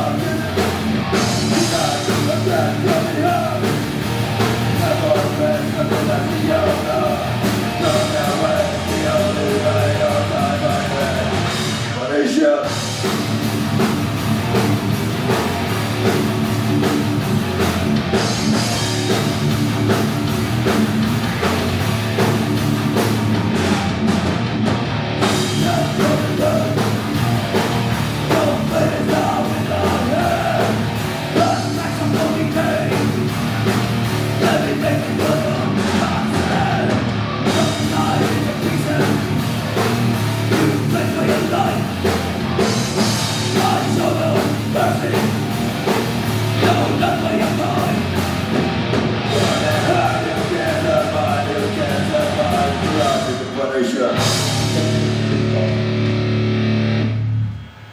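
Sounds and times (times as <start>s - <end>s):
wavering vocal lines: 0.0s - 3.8s, 4.8s - 12.8s, 25.4s - 27.2s, 28.2s - 33.3s, 34.4s - 39.4s, 40.5s - 42.1s, 43.5s - 45.4s, 46.6s - 48.2s, 49.3s - 55.8s
metal band playing live: 0.0s - 57.9s.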